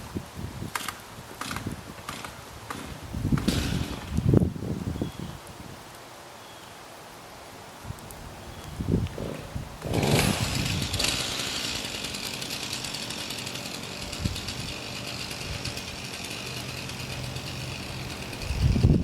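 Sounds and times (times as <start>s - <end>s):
chainsaw engine running: 0.8s - 4.2s, 9.2s - 19.0s
chainsaw starter cord pulls: 0.8s - 4.2s, 9.2s - 19.0s.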